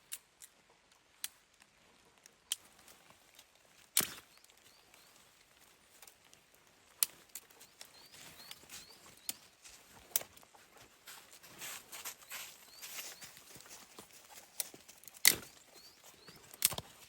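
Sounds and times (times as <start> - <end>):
sharp clicks: 4.0 - 4.4, 14.6 - 17.0.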